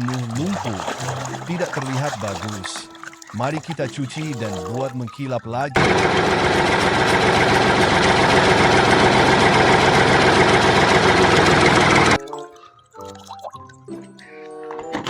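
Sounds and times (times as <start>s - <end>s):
tractor engine idling: 5.7s - 12.2s.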